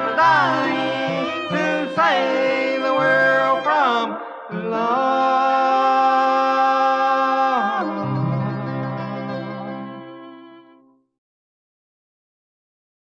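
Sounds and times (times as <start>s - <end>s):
bluegrass band playing: 0.0s - 6.1s, 7.5s - 10.8s
sliding lead melody line: 0.0s - 6.1s, 7.4s - 10.9s.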